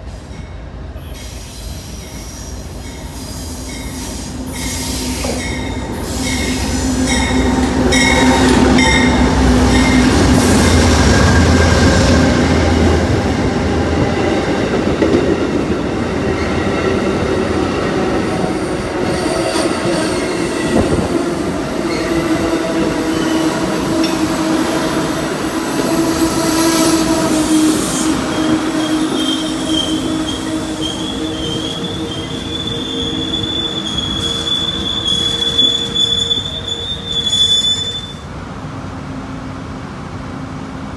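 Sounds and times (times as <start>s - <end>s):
train wheels squealing on rail: 0.0s - 38.3s
high wavering squeal: 1.6s - 12.2s, 23.1s - 38.2s.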